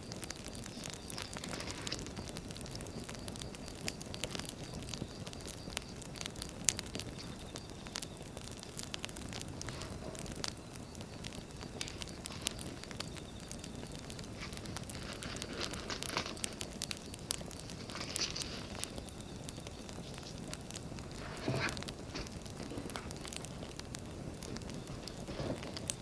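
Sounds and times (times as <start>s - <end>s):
wood fire crackling and popping: 0.0s - 26.0s
paper crinkling: 0.7s - 2.3s, 11.5s - 19.2s, 19.8s - 26.0s.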